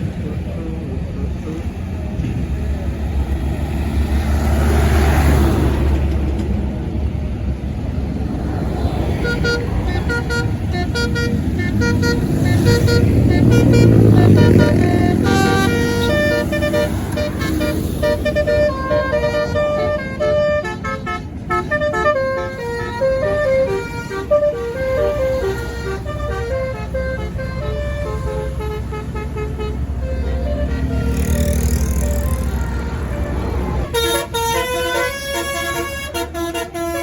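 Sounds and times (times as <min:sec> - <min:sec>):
bus engine rumble: 0:00.0 - 0:37.0
bus musical horn: 0:08.7 - 0:37.0.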